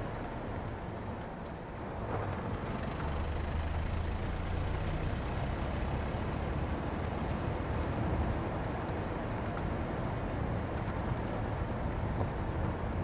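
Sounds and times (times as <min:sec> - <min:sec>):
tyres rumbling on rough road: 0:00.0 - 0:13.0.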